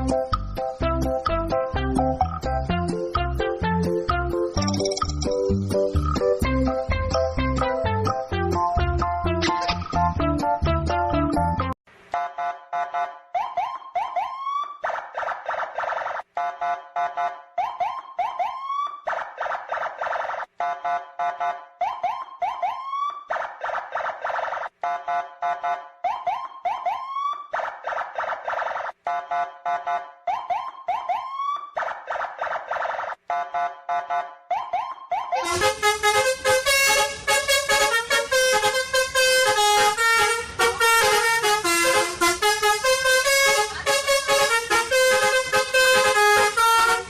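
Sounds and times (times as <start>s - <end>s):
electronic siren alarm: 12.2s - 14.8s, 16.4s - 19.0s, 20.6s - 23.3s, 24.8s - 27.5s, 29.1s - 31.8s, 33.3s - 36.0s.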